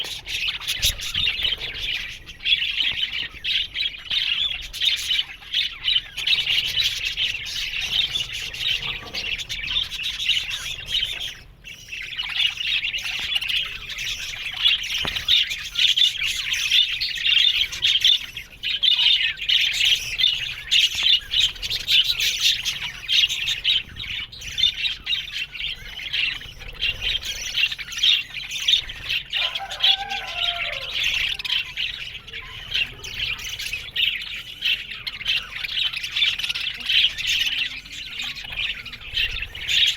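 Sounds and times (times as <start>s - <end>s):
budgerigars chattering: 0.0s - 39.9s
low wavering squawk: 0.0s - 39.9s.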